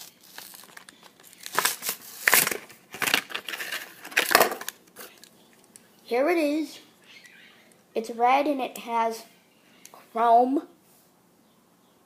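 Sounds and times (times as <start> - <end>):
plastic and card crinkling and tearing: 0.0 - 5.7.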